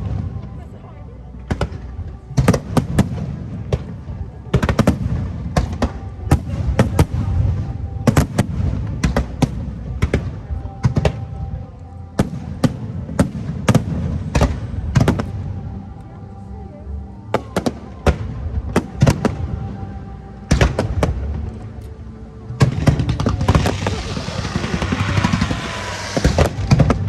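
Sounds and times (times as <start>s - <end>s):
low rumble: 0.0s - 27.0s
fireworks bangs: 22.6s - 27.0s.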